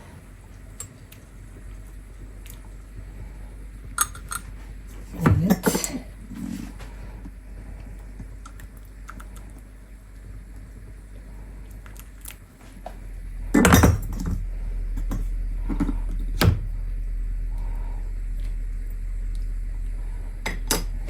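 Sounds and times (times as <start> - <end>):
kitchenware clinking and knocking: 13.6 - 14.4.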